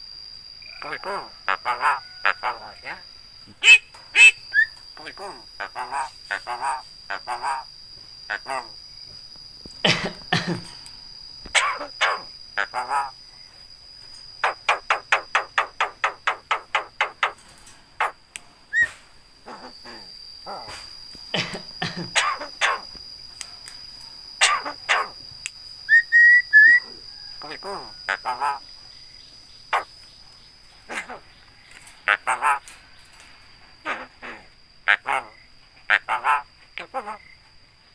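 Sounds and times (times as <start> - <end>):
bird harsh calls: 3.5 - 7.7, 11.5 - 13.2, 14.4 - 17.4, 18.0 - 20.8, 22.2 - 22.9, 24.4 - 25.2, 25.9 - 28.7, 29.7 - 29.9, 32.0 - 32.7, 33.8 - 35.3
bird whistled phrase: 4.5 - 4.8, 25.9 - 26.9.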